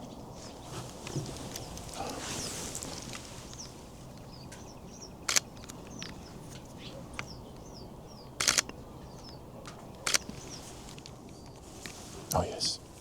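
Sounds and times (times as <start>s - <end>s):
small birds chirping: 0.0s - 12.8s
camera shutter firing: 5.3s - 5.5s, 8.4s - 8.7s, 10.0s - 10.3s.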